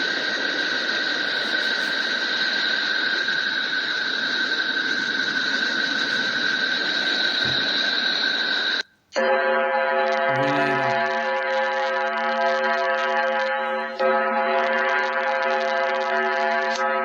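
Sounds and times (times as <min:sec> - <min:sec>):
steady hiss: 0:00.0 - 0:09.2.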